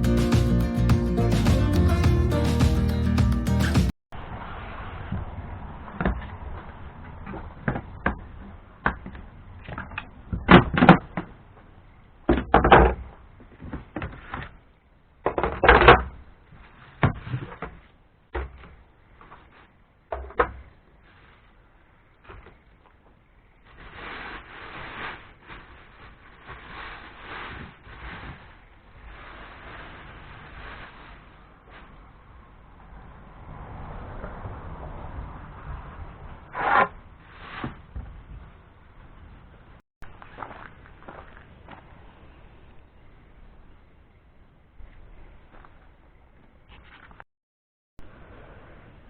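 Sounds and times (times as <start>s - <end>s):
rasping scraping strokes: 36.4s - 37.8s.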